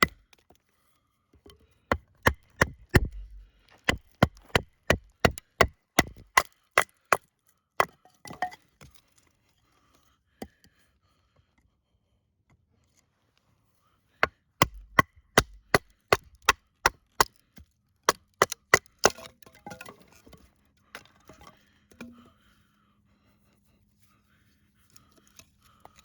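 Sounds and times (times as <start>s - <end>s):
knife chopping into wood: 2.2s - 6.9s, 14.6s - 17.3s, 18.1s - 19.3s.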